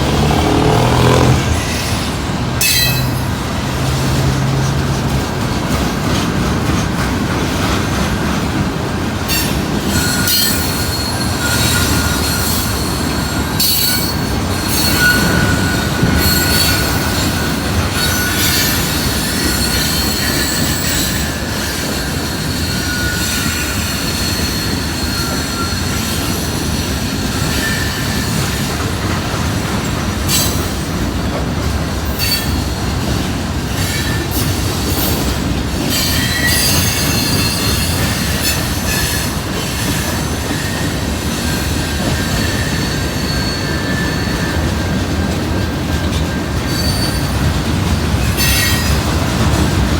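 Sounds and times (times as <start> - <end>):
wheels clacking over rail joints: 0.0 - 22.6
freight train rumbling: 0.0 - 49.9
wheel squeal: 9.3 - 29.2, 32.0 - 49.8.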